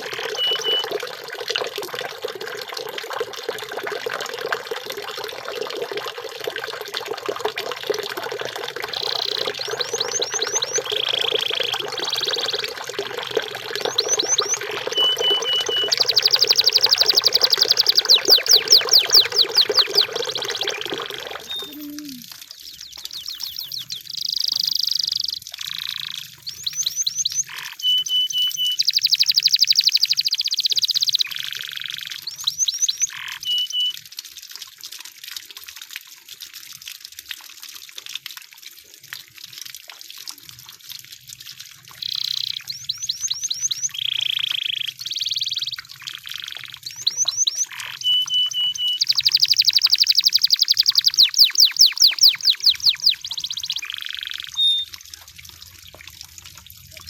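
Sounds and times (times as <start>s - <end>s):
canary singing: 0.0s - 1.0s, 8.9s - 12.8s, 13.4s - 33.9s, 42.0s - 54.9s
running water: 0.0s - 57.0s.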